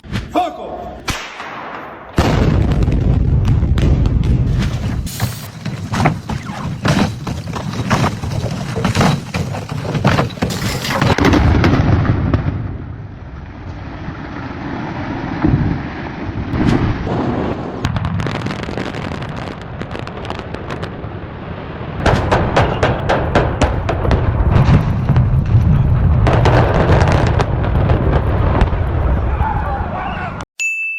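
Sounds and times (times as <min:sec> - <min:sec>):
demolition crashes and thuds: 0:02.2 - 0:18.6, 0:22.0 - 0:29.2
rumble of falling debris: 0:02.2 - 0:30.0.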